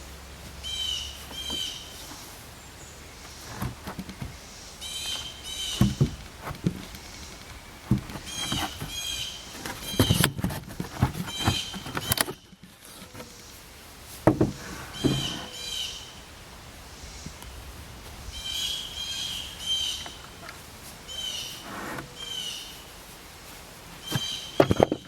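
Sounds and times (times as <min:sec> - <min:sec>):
wooden boards knocking: 0:03.4 - 0:04.4, 0:05.1 - 0:12.1, 0:14.2 - 0:15.5, 0:24.1 - 0:25.0
bird chirps: 0:04.2 - 0:06.1, 0:18.3 - 0:20.2.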